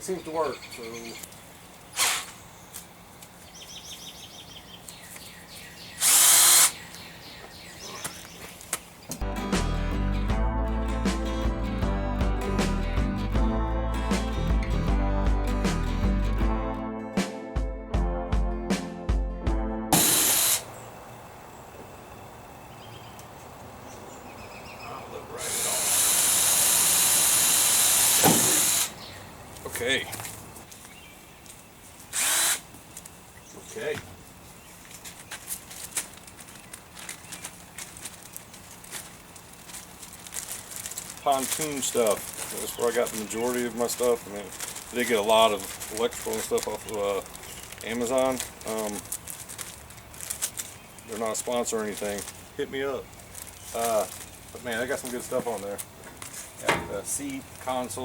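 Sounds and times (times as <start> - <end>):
small power drill whirring: 6.0 - 6.8, 20.0 - 20.7, 25.4 - 29.0, 32.1 - 32.7
guitar music: 9.2 - 20.0.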